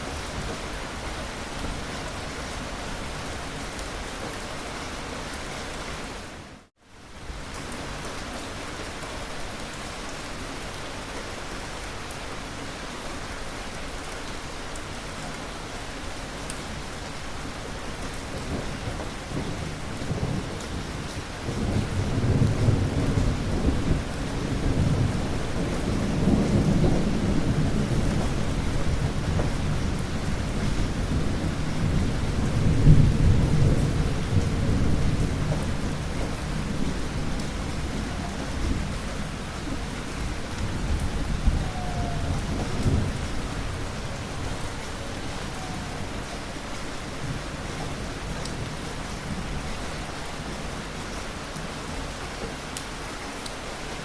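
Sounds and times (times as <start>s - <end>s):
steady rain: 0.0s - 54.0s
rolling thunder: 18.3s - 50.1s.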